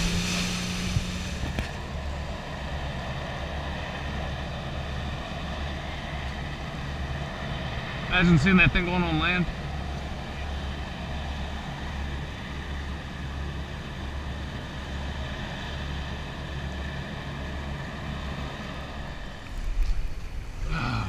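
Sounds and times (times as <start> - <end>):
louder rumble: 0.0 - 2.2
outboard motor droning: 0.0 - 21.0.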